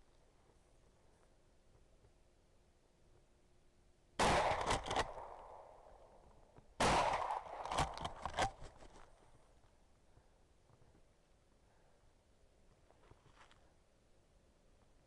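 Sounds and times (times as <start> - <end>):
shotgun blasts: 4.2 - 5.9, 6.8 - 8.6
sharp cracks and echoes: 4.2 - 8.6.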